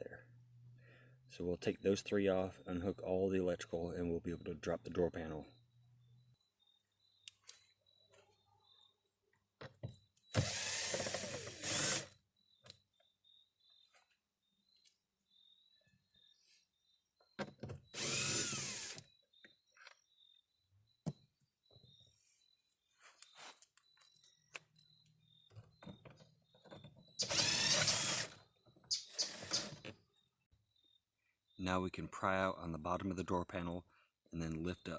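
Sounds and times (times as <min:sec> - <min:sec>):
power drill spinning bolt: 0:10.3 - 0:12.1, 0:17.9 - 0:19.0, 0:27.2 - 0:29.9
power driver spinning: 0:18.0 - 0:19.0.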